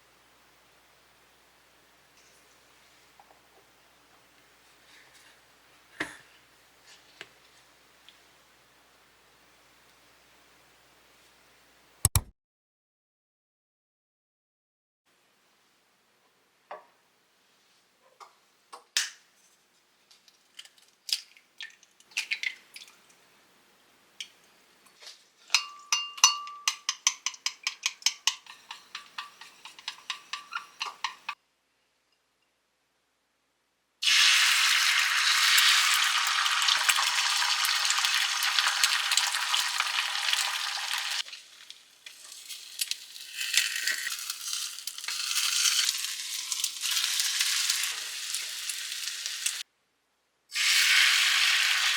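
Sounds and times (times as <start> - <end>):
clinks of beating in a bowl: 25.5 - 31.4
food sizzling in a pan: 34.0 - 49.7, 50.5 - 51.9.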